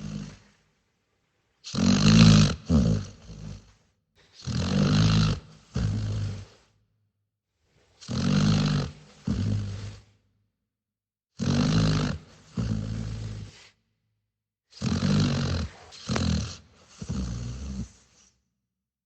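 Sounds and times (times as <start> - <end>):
dog snoring: 0.0 - 0.6, 1.6 - 6.8, 7.7 - 10.2, 11.4 - 13.8, 14.7 - 18.4.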